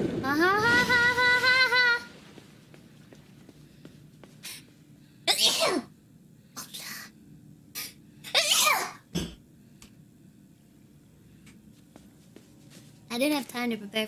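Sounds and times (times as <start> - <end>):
woman sneezing: 8.3 - 9.0.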